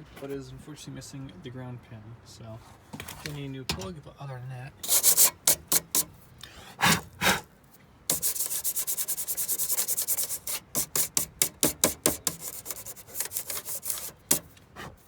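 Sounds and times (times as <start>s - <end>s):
rubbing strokes: 4.8s - 6.1s, 8.1s - 15.0s.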